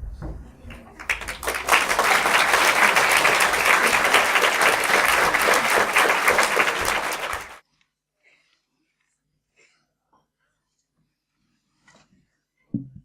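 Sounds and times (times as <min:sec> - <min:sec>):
audience applauding: 0:00.7 - 0:07.6.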